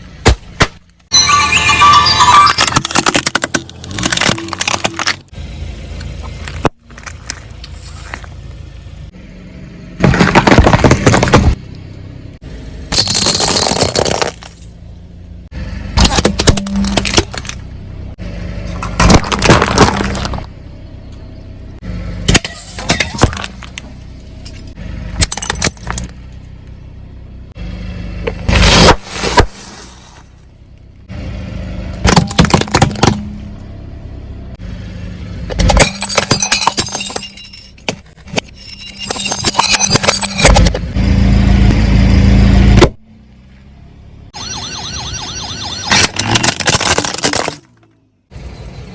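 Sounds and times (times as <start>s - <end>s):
car engine humming: 0.0s - 48.9s
tyres crushing drink containers: 13.0s - 14.6s, 18.8s - 20.5s, 46.0s - 47.8s.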